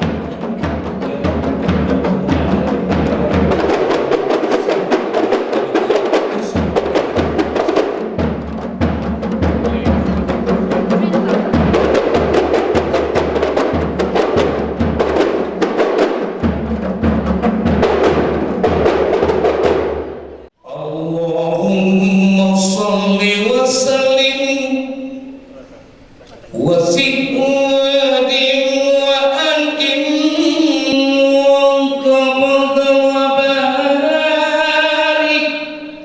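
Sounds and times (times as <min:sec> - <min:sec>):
hand drums beating fast: 0:00.0 - 0:20.5.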